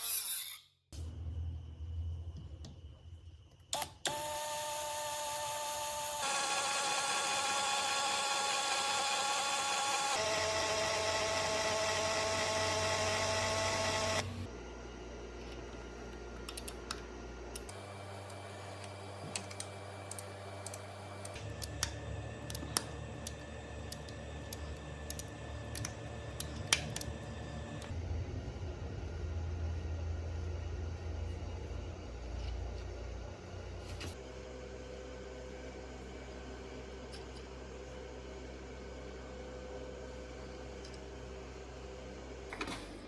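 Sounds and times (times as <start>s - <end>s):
small motor whining: 4.1s - 14.5s.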